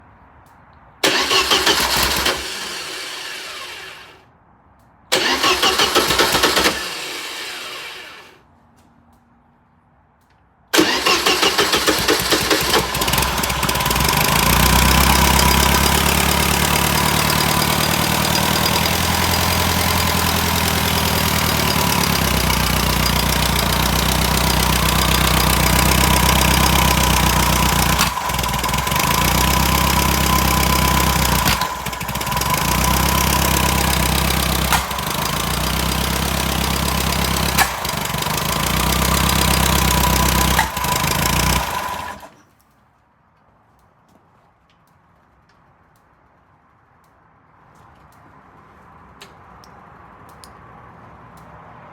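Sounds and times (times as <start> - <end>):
engine starting and running: 1.0 - 4.2, 5.1 - 8.4, 10.8 - 42.5.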